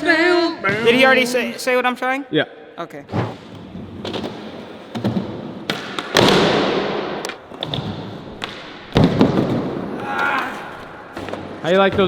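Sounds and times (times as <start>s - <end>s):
skateboard landing impact: 4.0s - 10.0s.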